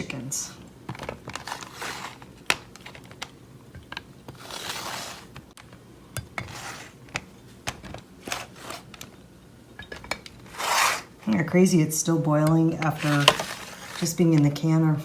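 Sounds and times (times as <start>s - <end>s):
scraping: 1.0s - 5.5s, 6.3s - 9.2s, 9.8s - 14.6s
glass jars clinking: 9.8s - 10.3s.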